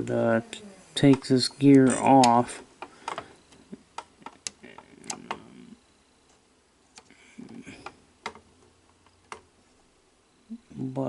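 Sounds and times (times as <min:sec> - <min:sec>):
small sharp clicks: 0:01.8 - 0:05.4.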